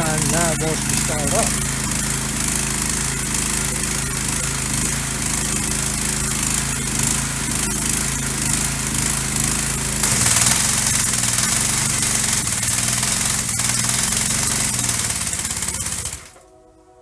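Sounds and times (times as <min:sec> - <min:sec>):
small gas engine running: 0:00.0 - 0:16.6
pressure washer hiss: 0:08.3 - 0:16.2.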